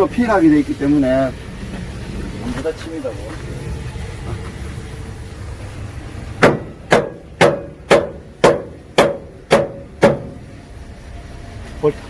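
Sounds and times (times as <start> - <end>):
hammer striking metal: 6.4 - 10.4.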